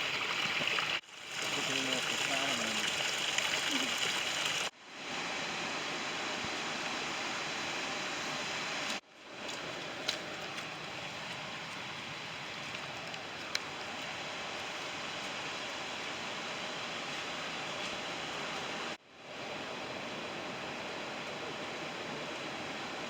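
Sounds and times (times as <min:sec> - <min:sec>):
rushing running water: 0:00.0 - 0:04.8.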